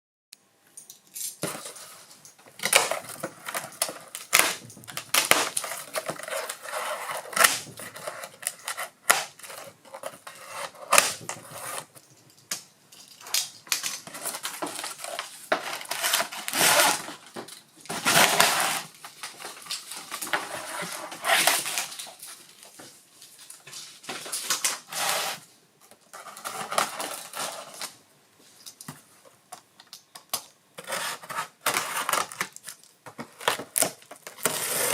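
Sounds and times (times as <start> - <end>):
packaging crinkling: 1.4 - 12.0, 13.2 - 25.4.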